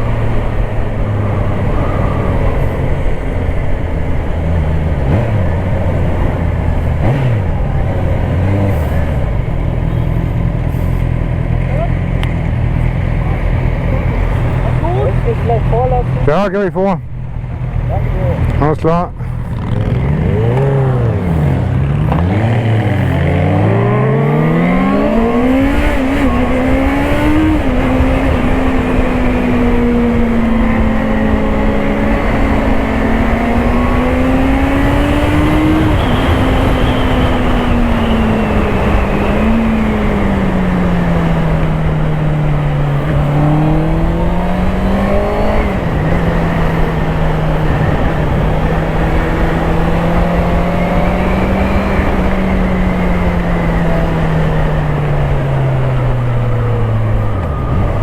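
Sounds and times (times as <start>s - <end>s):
motorcycle engine revving: 0.0s - 58.0s
wind rumble on microphone: 19.2s - 58.0s.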